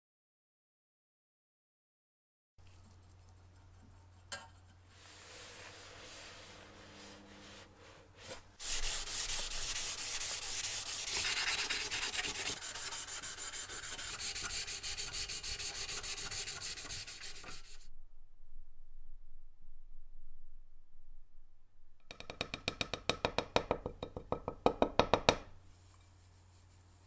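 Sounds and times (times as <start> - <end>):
abrasive scrubbing on metal: 5.0 - 17.8.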